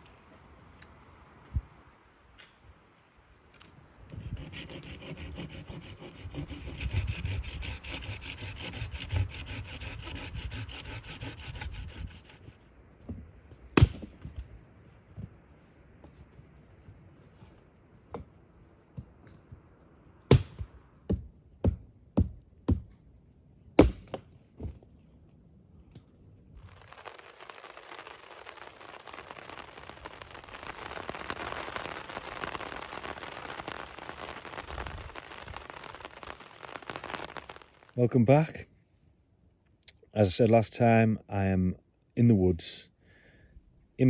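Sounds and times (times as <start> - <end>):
heavy rain hiss: 26.6 - 38.5.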